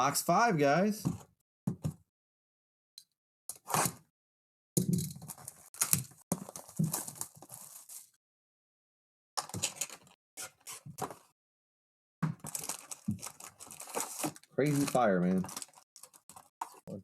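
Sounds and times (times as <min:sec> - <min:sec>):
plastic wrapping crinkling: 0:05.2 - 0:08.1, 0:12.4 - 0:16.8
cardboard and packs tearing: 0:12.5 - 0:16.8.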